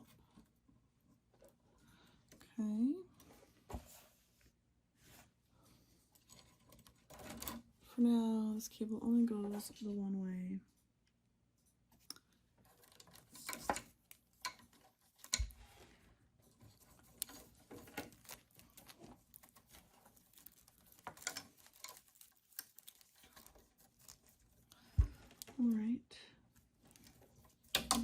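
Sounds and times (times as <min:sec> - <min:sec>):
hands handling cables and zip ties: 0:16.6 - 0:25.6.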